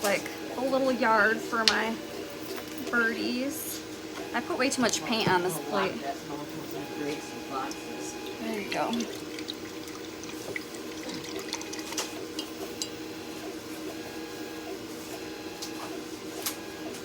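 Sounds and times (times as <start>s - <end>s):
laser cutter humming: 0.0s - 17.0s.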